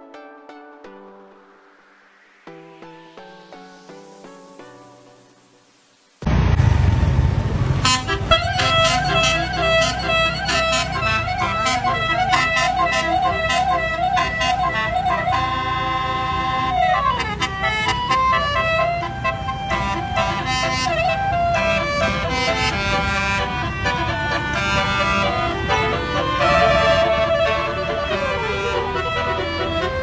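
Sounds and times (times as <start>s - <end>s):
low rumble: 6.2s - 8.5s
musical bus horn melody: 7.6s - 30.0s.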